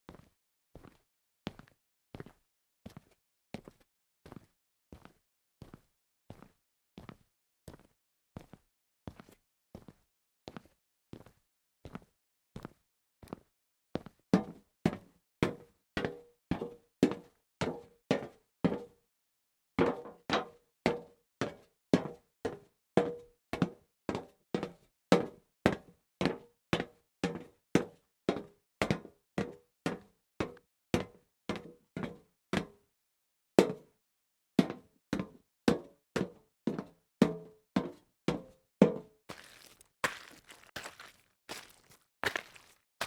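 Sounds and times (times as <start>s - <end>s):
hard shoes walking on hard floor: 39.3s - 42.8s.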